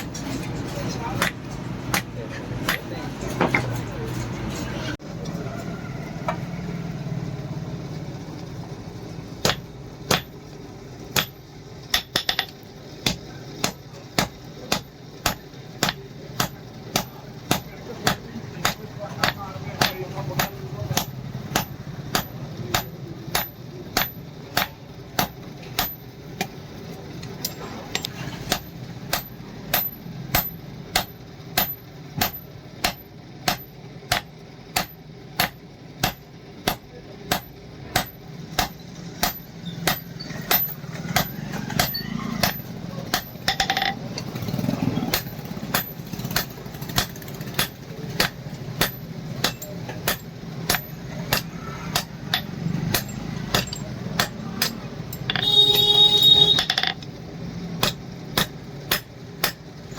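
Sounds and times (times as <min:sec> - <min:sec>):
hammer ringing on steel anvil: 0:28.5 - 0:44.0, 0:45.1 - 0:57.0.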